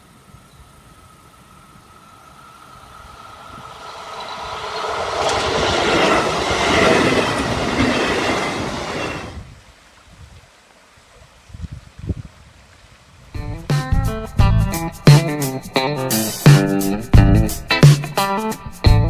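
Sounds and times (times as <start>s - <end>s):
electric train passing: 0.8s - 9.5s
train wheels clattering over rail joints: 3.7s - 9.3s.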